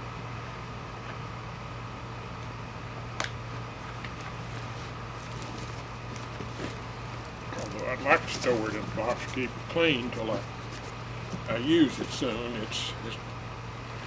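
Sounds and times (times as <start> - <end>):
steady low hum: 0.0 - 14.0
faint rustling: 4.1 - 13.4.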